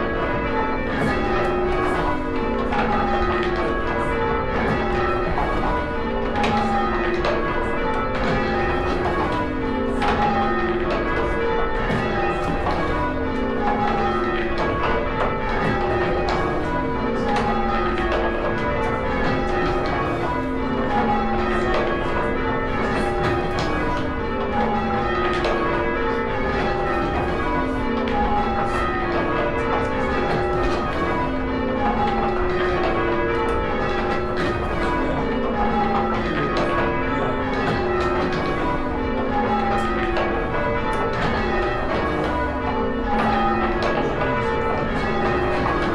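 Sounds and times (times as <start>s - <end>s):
church bells change ringing: 0.0s - 45.9s.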